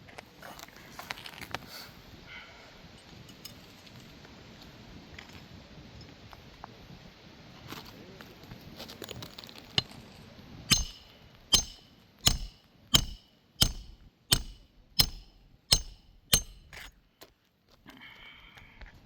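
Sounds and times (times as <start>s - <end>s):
hammer striking nails: 10.7s - 16.9s.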